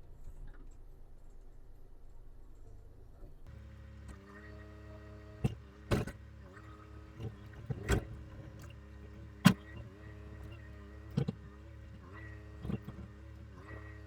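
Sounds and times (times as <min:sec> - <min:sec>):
excavator diesel engine and hydraulics: 0:03.5 - 0:14.0.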